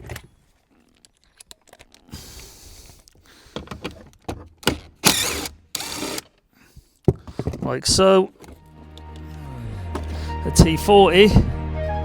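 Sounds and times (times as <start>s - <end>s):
hand tools clicking on metal: 4.6s - 6.4s.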